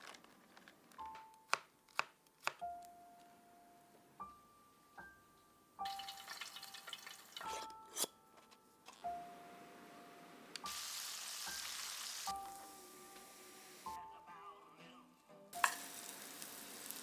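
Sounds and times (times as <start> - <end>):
soft background music: 0.9 - 17.0
food sizzling in hot oil: 5.9 - 7.5, 10.7 - 12.6, 15.6 - 17.0.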